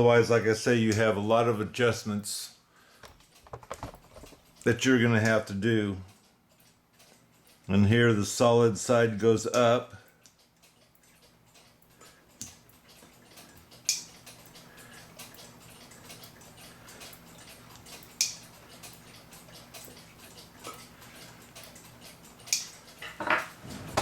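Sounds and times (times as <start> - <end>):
faint steady hum: 0.0 - 24.0
clicks of metal clock parts: 6.0 - 7.8, 9.4 - 24.0.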